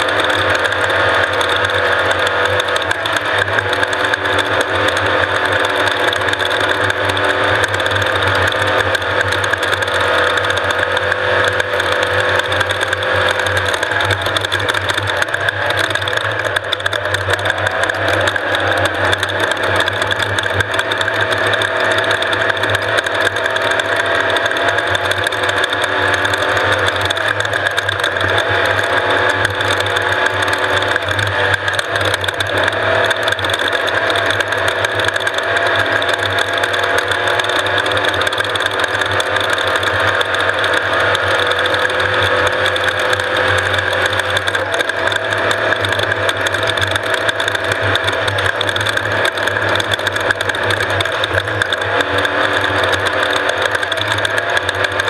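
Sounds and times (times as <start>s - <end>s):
fast mechanical rattle: 0.0s - 55.0s
race vehicle engine running hard: 0.0s - 55.0s.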